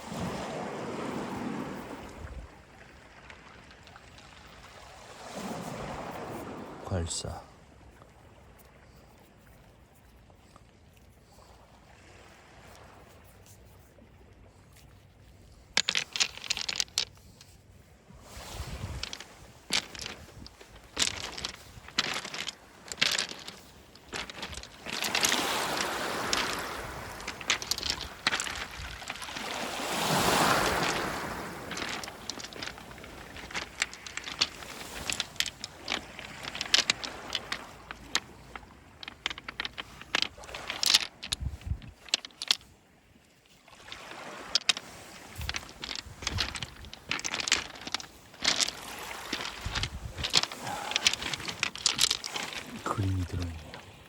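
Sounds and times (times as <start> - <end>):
beach pebbles clattering: 15.6 - 17.6, 18.2 - 42.7, 43.4 - 54.0
stones knocking together: 15.7 - 17.6, 18.4 - 42.7, 43.4 - 53.8.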